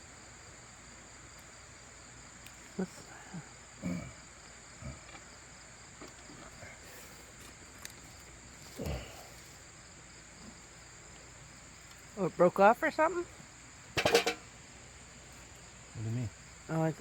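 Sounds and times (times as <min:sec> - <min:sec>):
insects chirring: 0:00.0 - 0:17.0.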